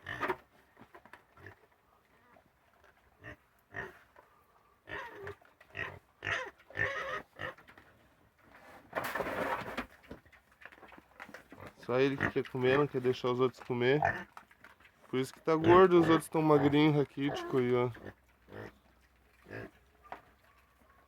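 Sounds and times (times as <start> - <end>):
pigs grunting and squealing: 3.2 - 4.0, 4.8 - 7.6, 11.6 - 13.2, 13.8 - 14.4, 15.2 - 19.9.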